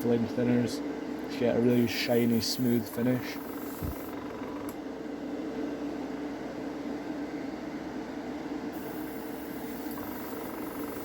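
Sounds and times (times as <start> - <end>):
airbrush compressor humming: 1.7 - 4.7, 8.8 - 11.0.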